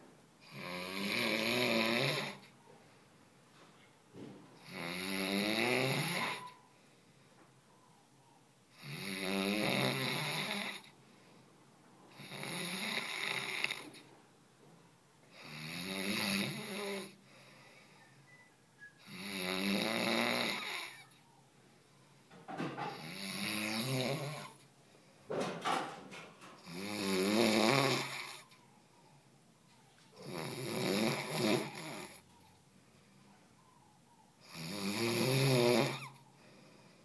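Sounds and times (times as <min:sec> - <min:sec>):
person snoring: 0:00.4 - 0:02.5, 0:04.6 - 0:06.5, 0:08.7 - 0:10.9, 0:12.1 - 0:14.0, 0:15.3 - 0:17.2, 0:19.0 - 0:21.1, 0:22.9 - 0:24.6, 0:26.6 - 0:28.5, 0:30.2 - 0:32.2, 0:34.4 - 0:36.8
quiet breaths: 0:02.0 - 0:09.0, 0:09.6 - 0:15.7, 0:16.4 - 0:26.9, 0:27.8 - 0:34.8, 0:35.9 - 0:37.0.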